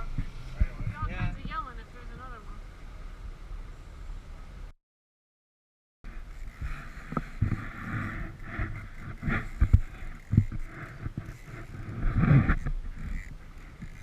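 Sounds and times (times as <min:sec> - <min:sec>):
wind: 0:00.0 - 0:04.8, 0:06.0 - 0:14.0
water noise: 0:06.1 - 0:14.0.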